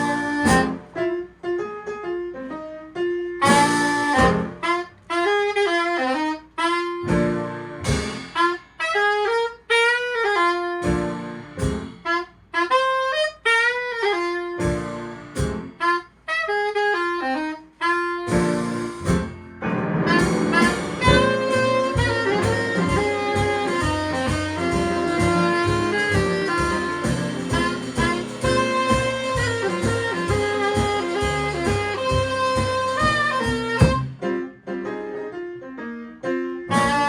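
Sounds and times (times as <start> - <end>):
saxophone playing jazz: 0.0 - 1.7, 3.0 - 34.6, 36.7 - 37.0
jazz band playing: 0.0 - 37.0.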